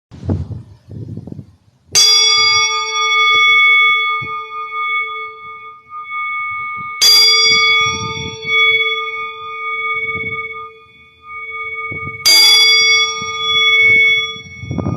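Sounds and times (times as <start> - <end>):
singing bowl ringing: 1.9 - 14.9.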